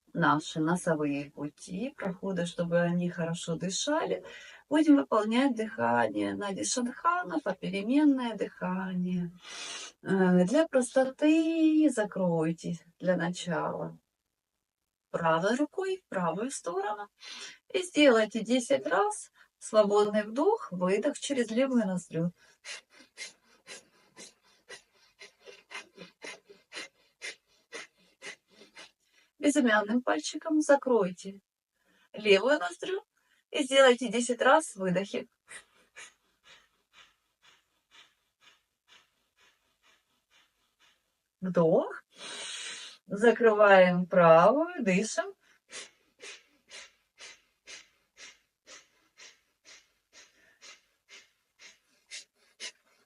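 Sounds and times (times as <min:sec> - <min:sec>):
rhythmic breathing through nostril: 0:09.3 - 0:10.0, 0:22.3 - 0:29.4, 0:35.2 - 0:41.4, 0:42.0 - 0:43.1, 0:45.3 - 0:53.0
woman breathing through nostril: 0:09.4 - 0:10.0, 0:42.1 - 0:43.1, 0:45.4 - 0:53.0.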